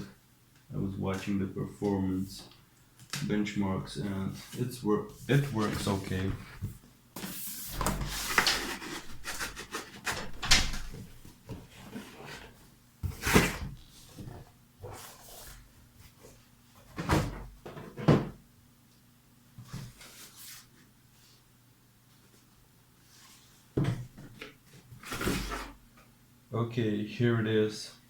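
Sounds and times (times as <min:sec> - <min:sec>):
cardboard scraping and rustling: 0:05.2 - 0:15.7, 0:24.7 - 0:25.8.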